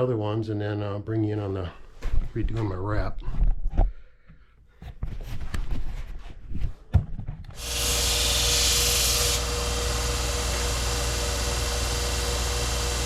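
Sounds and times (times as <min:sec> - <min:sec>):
belt grinder running: 0:07.6 - 0:13.0
steel grinding on belt: 0:07.6 - 0:13.0.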